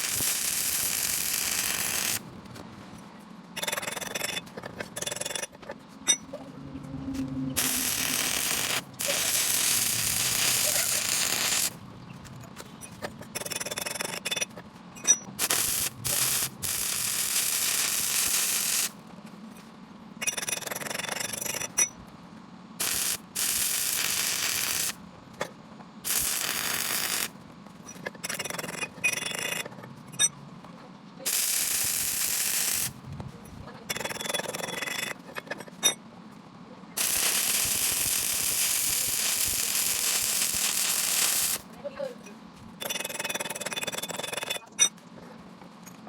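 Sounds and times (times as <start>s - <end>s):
welding arc crackling: 0.0s - 2.3s, 7.6s - 11.8s, 15.4s - 19.0s, 22.8s - 25.0s, 26.0s - 27.3s, 31.3s - 33.0s, 37.0s - 41.7s.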